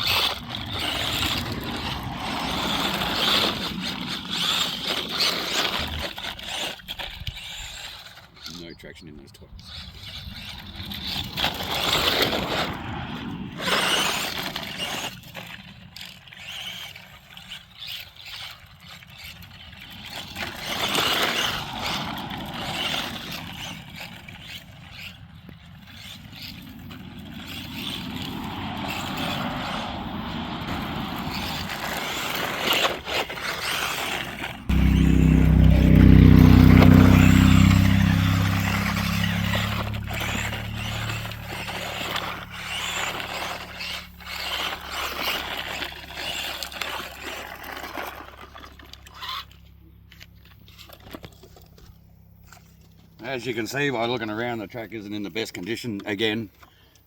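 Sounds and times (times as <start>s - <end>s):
rc car motor whine: 0.0s - 57.0s
tyres scrabbling on dirt: 0.0s - 57.0s
loud low rumble: 34.6s - 42.4s.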